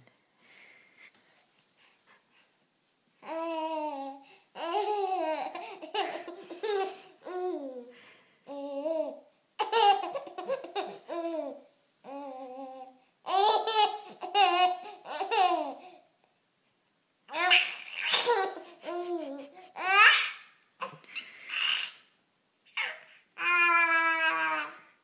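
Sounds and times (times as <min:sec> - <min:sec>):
baby babbling and laughing: 0:03.2 - 0:07.9, 0:08.5 - 0:15.9, 0:17.3 - 0:22.1, 0:22.7 - 0:24.9.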